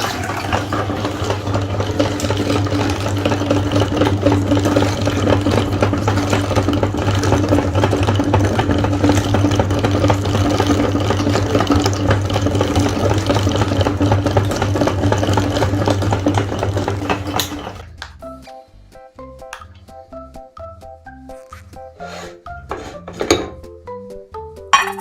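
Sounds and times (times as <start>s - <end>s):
food crackling through grinder: 0.0s - 17.9s
meat grinder motor hum: 0.0s - 17.9s.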